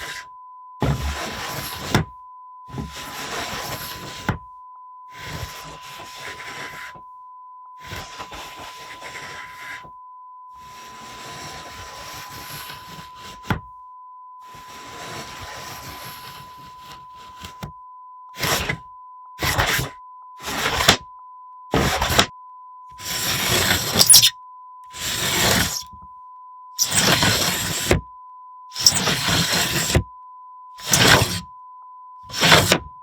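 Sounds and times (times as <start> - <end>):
sliding doors scraping: 23.0 - 24.3, 25.0 - 25.9, 26.8 - 28.0, 28.8 - 30.0, 30.8 - 31.4, 32.3 - 32.9.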